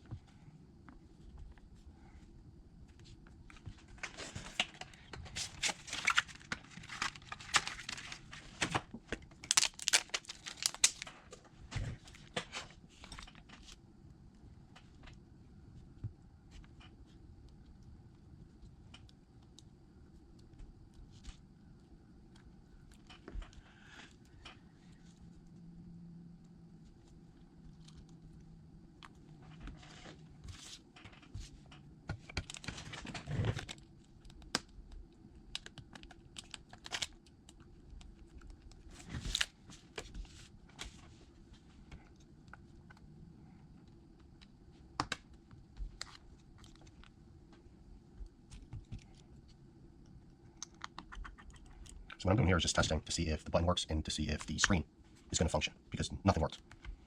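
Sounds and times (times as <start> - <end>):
film peeling and crackling: 3.9 - 11.3, 35.5 - 39.7.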